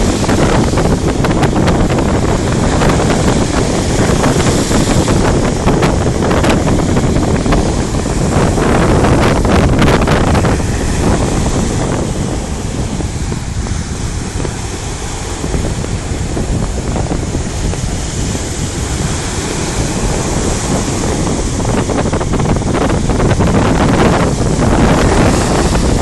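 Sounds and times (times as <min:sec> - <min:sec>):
sea waves washing onto shore: 0:00.0 - 0:26.0
wind buffeting microphone: 0:00.0 - 0:26.0.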